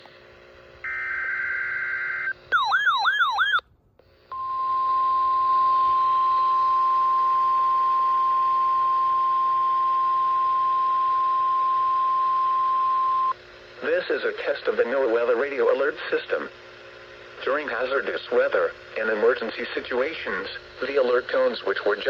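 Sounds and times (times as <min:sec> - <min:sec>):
steady warning alarm tone: 0:00.8 - 0:03.6
warbling alarm tone: 0:00.9 - 0:03.6.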